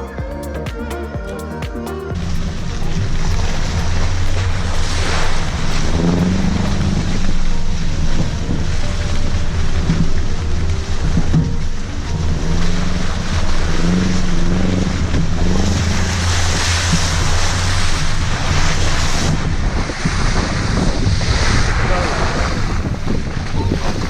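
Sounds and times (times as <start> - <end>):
hissing rush: 0.0 - 7.5
vehicle engine revving: 0.0 - 8.8, 12.2 - 19.6
wind buffeting microphone: 2.2 - 24.0.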